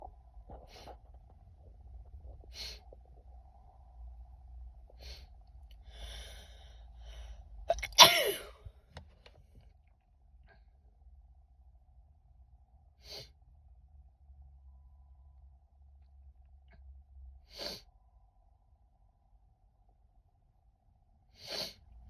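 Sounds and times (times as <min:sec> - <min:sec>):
woman sniffing: 0:07.7 - 0:08.5, 0:17.5 - 0:17.8, 0:21.4 - 0:21.8
woman sneezing: 0:07.7 - 0:08.6.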